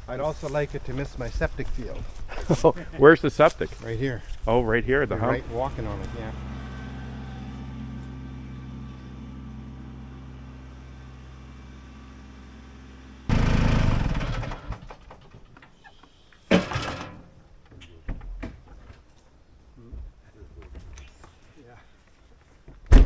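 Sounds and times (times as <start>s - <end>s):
engine idling: 0.0s - 15.8s
loud rushing clatter: 13.3s - 15.3s
clicks and knocks: 14.1s - 19.1s.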